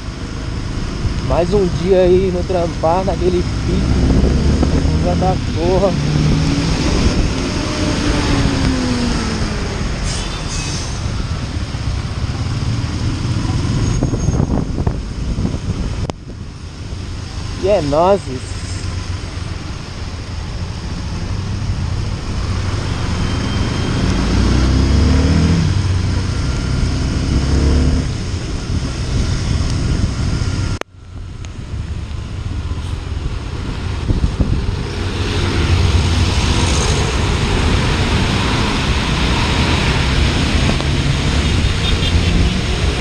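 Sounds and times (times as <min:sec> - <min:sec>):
wind and road hiss: 0:00.0 - 0:43.0
motorcycle engine accelerating: 0:03.5 - 0:10.0, 0:21.3 - 0:30.8.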